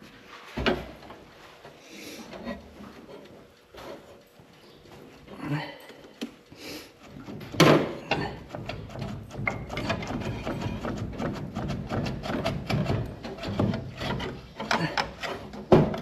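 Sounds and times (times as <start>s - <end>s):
metal clanking and scraping: 7.0s - 16.0s
small knocks and rattles: 7.0s - 16.0s.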